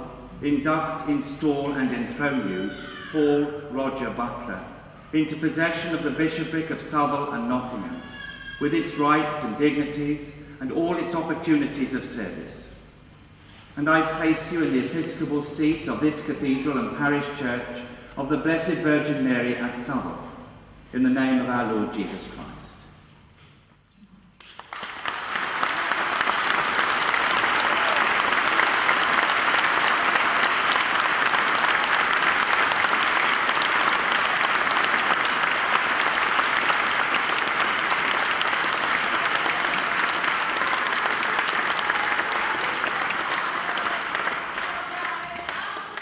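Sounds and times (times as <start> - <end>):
congregation applauding: 24.4 - 46.0.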